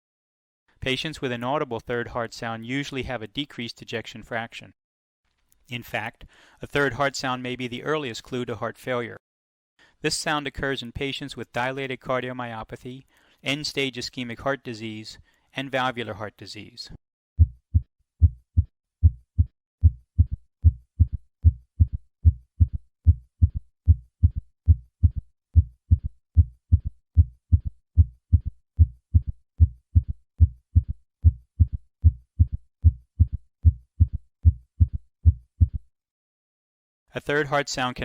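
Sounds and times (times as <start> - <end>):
heartbeat in galloping rhythm: 17.4 - 35.9.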